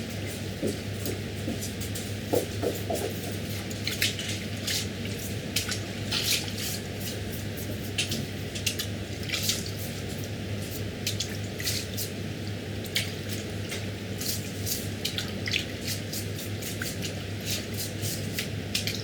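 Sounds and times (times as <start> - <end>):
wet squelches and splashes: 3.8 - 7.2, 7.9 - 10.0, 12.8 - 17.8.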